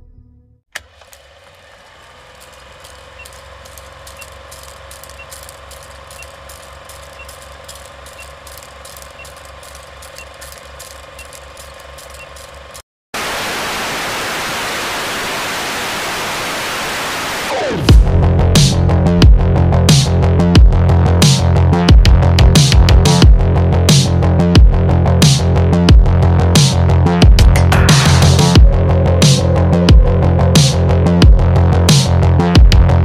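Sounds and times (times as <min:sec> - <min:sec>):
rapid mechanical ticking: 0:02.0 - 0:12.8
static-like hiss: 0:13.2 - 0:17.8.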